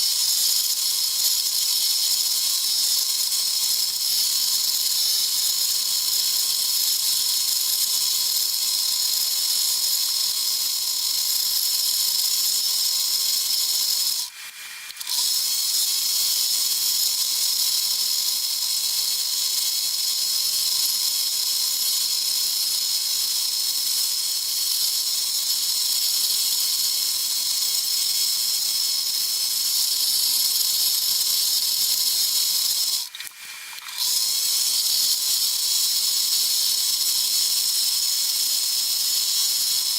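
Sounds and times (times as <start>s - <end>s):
power tool hissing: 0.0s - 39.9s.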